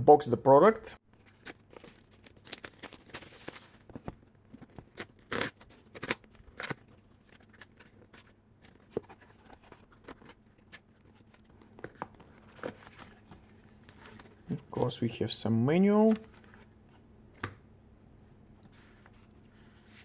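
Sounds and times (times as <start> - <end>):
packaging rustling: 1.2 - 14.6.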